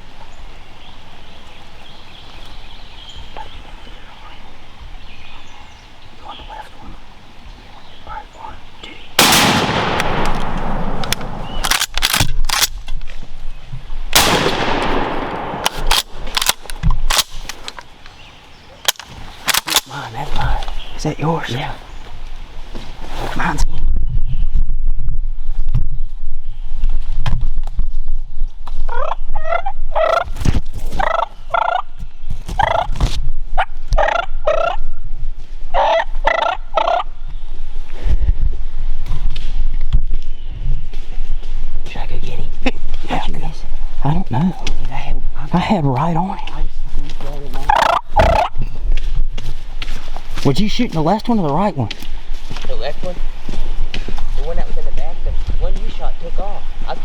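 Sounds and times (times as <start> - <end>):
shotgun blast with echo: 9.2 - 11.7, 14.2 - 16.0
wild turkey gobbling: 28.9 - 30.3, 31.0 - 31.9, 32.6 - 33.0, 33.6 - 34.9, 35.7 - 37.2, 47.6 - 48.7.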